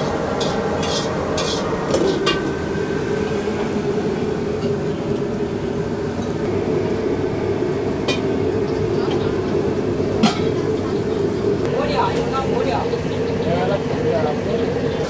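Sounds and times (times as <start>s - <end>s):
kitchen noise: 0.0s - 2.7s, 8.9s - 13.1s
background chatter: 8.3s - 15.0s.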